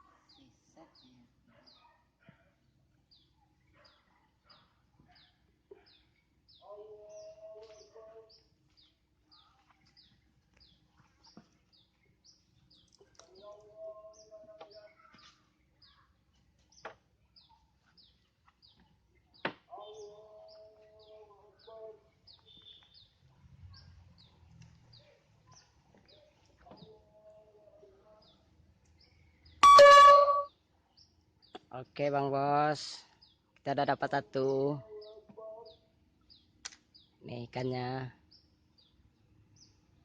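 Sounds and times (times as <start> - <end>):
bird chirping: 29.0 - 31.6
lower drawn-out bird call: 29.6 - 30.5.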